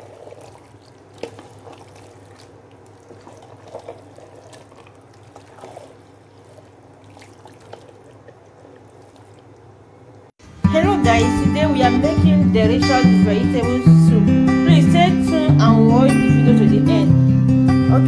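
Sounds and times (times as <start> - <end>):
water splashing in sink: 0.0 - 10.3.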